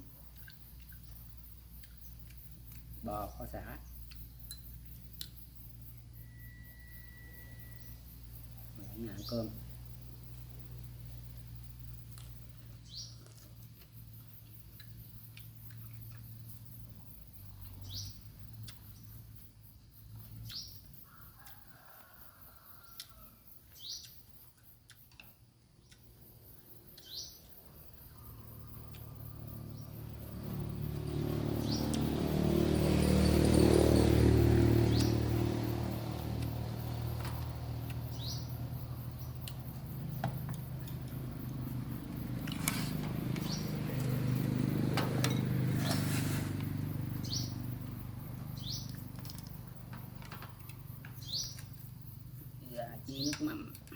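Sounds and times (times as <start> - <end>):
bird chirping: 14.1 - 19.4, 20.0 - 21.0, 23.7 - 24.5, 25.8 - 32.3, 33.0 - 49.9, 50.6 - 53.7.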